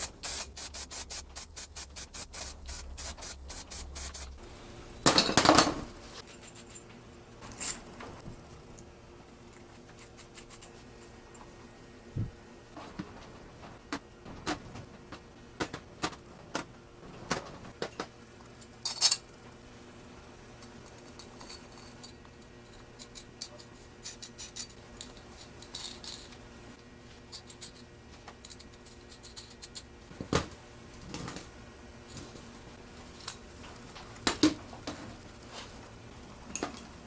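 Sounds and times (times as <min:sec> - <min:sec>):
small metal parts clinking: 0:21.1 - 0:26.4.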